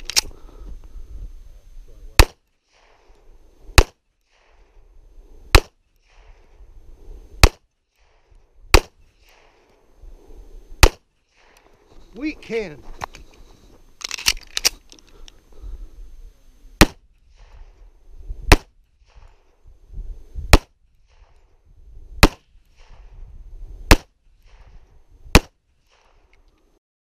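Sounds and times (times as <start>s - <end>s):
pistol shots: 2.2s - 3.1s, 3.8s - 4.7s, 5.5s - 6.4s, 7.4s - 9.6s, 10.8s - 11.7s, 16.8s - 17.7s, 18.5s - 19.4s, 22.2s - 23.0s, 23.9s - 26.3s.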